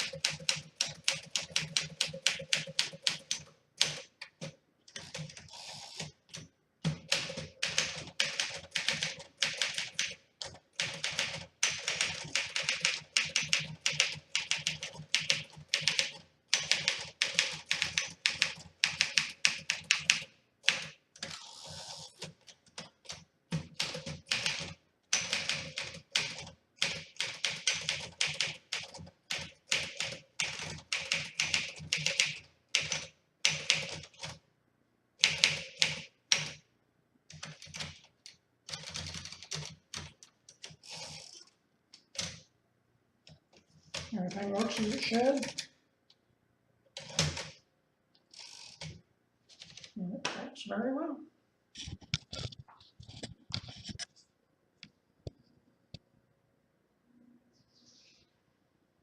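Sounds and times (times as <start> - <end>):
manual typewriter keystrokes: 0.0 - 21.4, 22.2 - 34.4, 35.2 - 36.6, 37.3 - 41.4, 43.9 - 45.7, 47.0 - 47.6, 48.4 - 50.0.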